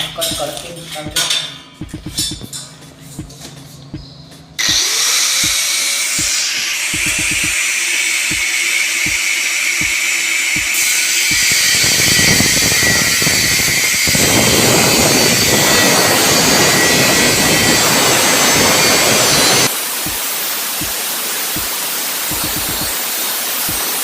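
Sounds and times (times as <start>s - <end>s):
angle grinder cutting metal: 4.6s - 23.9s.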